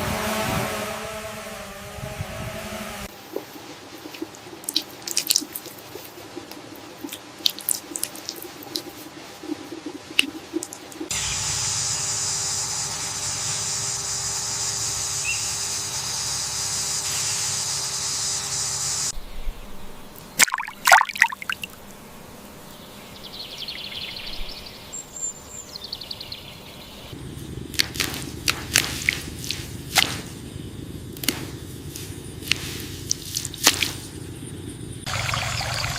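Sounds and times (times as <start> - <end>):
water dripping: 3.3 - 11.1, 20.1 - 22.0, 35.1 - 35.9
sharp splashing knocks: 20.4 - 21.7, 27.8 - 30.4, 32.5 - 34.0
water pouring: 20.4 - 21.8, 35.1 - 35.9.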